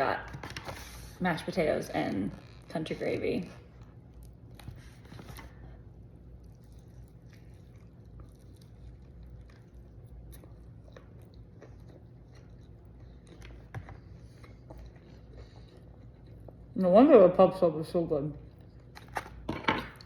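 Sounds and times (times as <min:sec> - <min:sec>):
low background hum: 0:00.0 - 0:20.0
person chewing food: 0:03.8 - 0:16.8.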